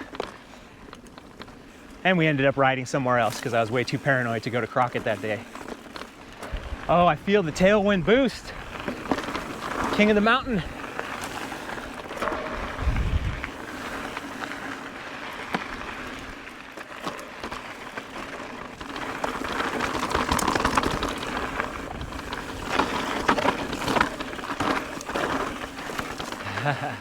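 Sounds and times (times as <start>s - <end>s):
bike rattling over rocks: 0.0s - 27.0s
tyres rolling on gravel: 0.0s - 27.0s
wind noise: 6.4s - 8.9s, 12.4s - 14.0s, 19.5s - 24.1s.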